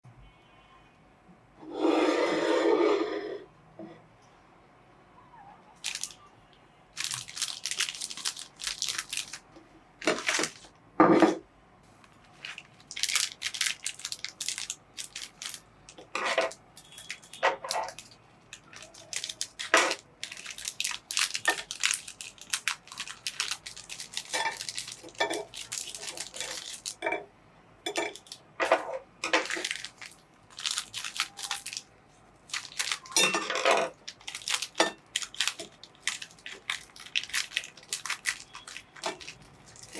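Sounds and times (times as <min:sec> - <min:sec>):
biscuits crunching in grinder: 0:07.0 - 0:10.7, 0:12.2 - 0:27.0, 0:27.9 - 0:39.9.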